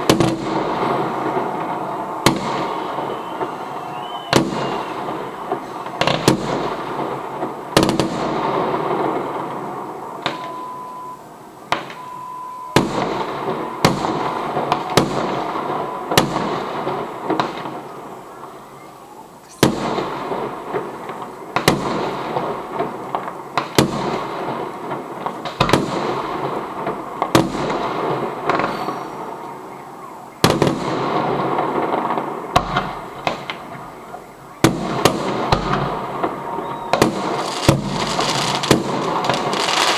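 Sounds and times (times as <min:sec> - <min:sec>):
fireworks crackling: 0:00.0 - 0:10.5, 0:12.8 - 0:18.2, 0:34.7 - 0:39.9
fireworks shells bursting: 0:37.0 - 0:39.9.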